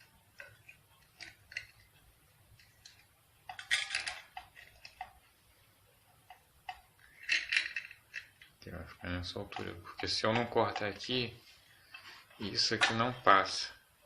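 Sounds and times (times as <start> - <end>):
small metal fittings clicking: 0.4 - 1.9
metal fittings clattering: 7.1 - 8.5.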